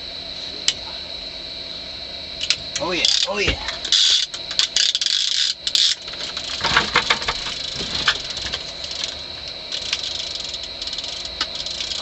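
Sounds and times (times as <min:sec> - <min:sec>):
fishing reel clicking: 0:02.4 - 0:12.0.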